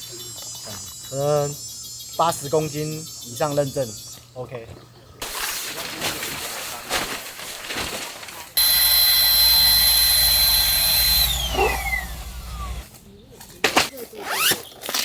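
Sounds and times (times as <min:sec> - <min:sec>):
small electric motor whining: 0:08.6 - 0:12.9.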